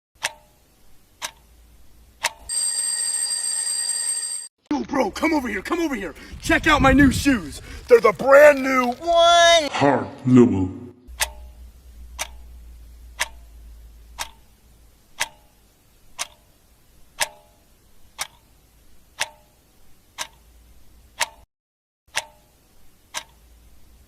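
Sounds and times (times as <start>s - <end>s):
clock ticking: 0.2s - 2.5s, 11.1s - 21.5s, 22.1s - 23.7s.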